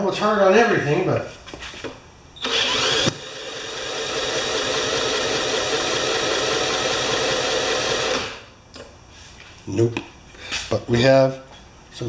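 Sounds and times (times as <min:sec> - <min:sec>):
mower engine turning over: 0:02.4 - 0:08.4
power drill spinning: 0:02.4 - 0:08.5.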